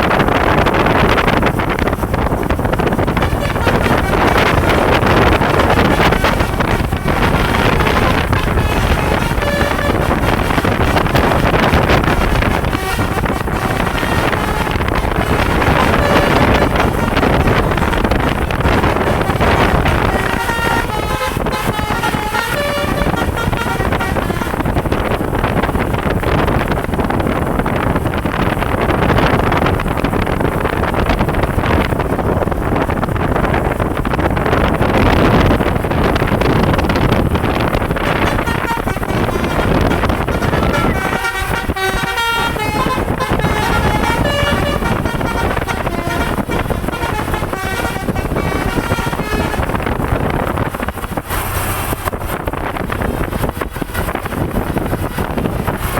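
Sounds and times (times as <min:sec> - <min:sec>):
low vehicle rumble: 0:00.0 - 0:55.9
traffic: 0:00.0 - 0:55.9
wind on microphone: 0:00.0 - 0:55.9
musical air horn notes: 0:02.9 - 0:25.2, 0:35.8 - 0:50.7.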